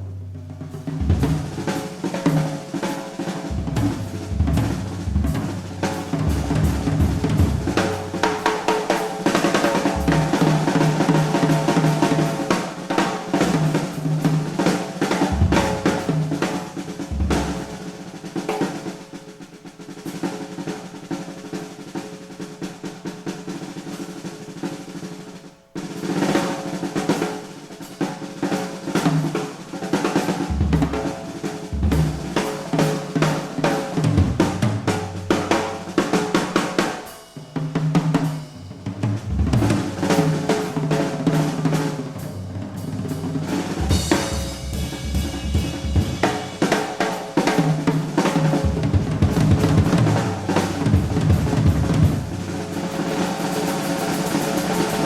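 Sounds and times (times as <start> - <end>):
jazz piano trio playing: 0.0 - 18.4, 28.3 - 37.0, 37.7 - 53.4
drum kit: 0.0 - 55.0.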